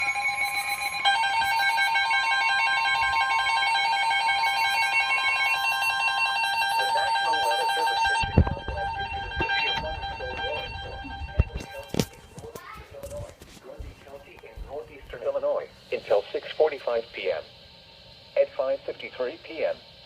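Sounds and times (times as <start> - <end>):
multi-pitch alert tone: 0.0 - 12.4
faint room sounds: 11.4 - 20.0.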